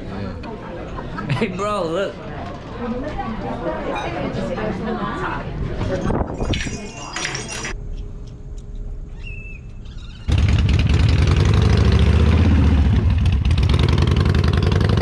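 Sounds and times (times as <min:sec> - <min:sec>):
motorcycle engine running: 0:10.3 - 0:15.0.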